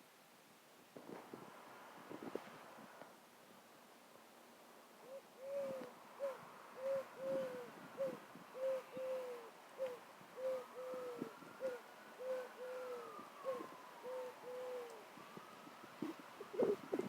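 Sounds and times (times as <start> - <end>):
bird giving low hooting calls: 5.0 - 15.4, 16.0 - 17.0.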